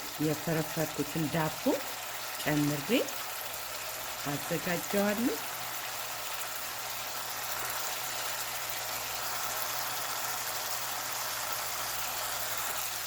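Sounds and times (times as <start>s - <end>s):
sauce sizzling and bubbling in a pan: 0.0s - 13.0s.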